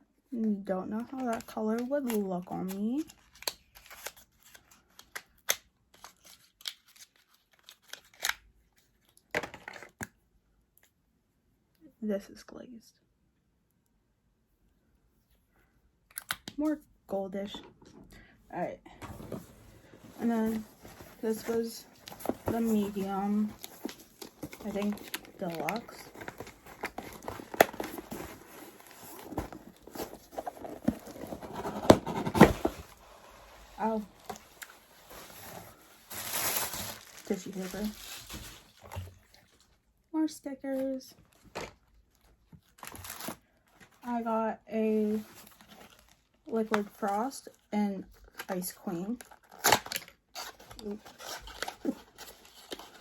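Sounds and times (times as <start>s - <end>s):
soft rustling: 18.9s - 39.6s
cardboard box knocks and thumps: 29.4s - 32.9s.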